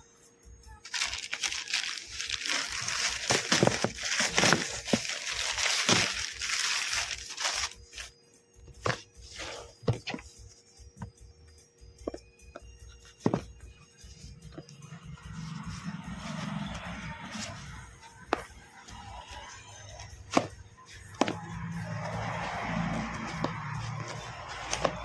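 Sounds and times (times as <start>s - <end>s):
plastic packaging crinkling: 0.8s - 8.1s.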